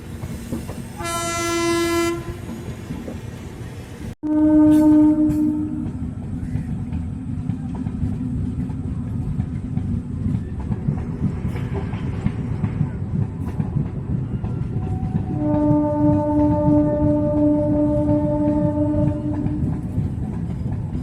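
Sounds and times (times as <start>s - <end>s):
train rumbling on tracks: 0.0s - 21.0s
train horn blast: 1.0s - 2.6s, 4.2s - 6.0s, 15.3s - 19.8s.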